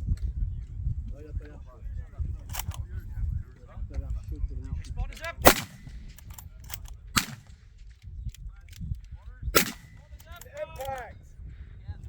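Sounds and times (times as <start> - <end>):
rifle shots: 5.4 - 7.8, 9.6 - 11.0.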